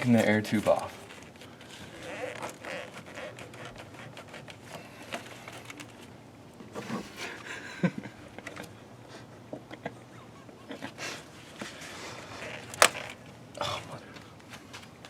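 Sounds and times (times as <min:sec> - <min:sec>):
plastic and metal clicks and knocks: 0:12.8 - 0:13.2.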